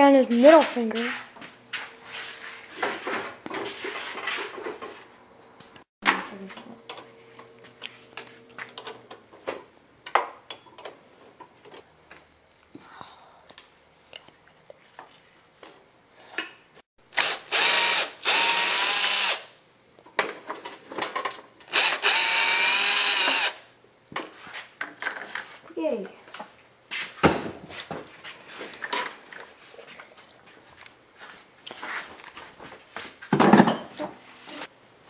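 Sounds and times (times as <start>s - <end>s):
power drill motor running: 17.1s - 19.5s, 21.7s - 23.6s.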